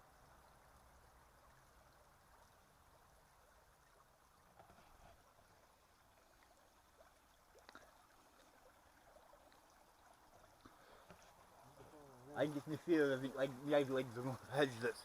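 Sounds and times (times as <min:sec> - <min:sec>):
faint running water: 0:00.0 - 0:15.0
faint small ticks: 0:03.8 - 0:12.0.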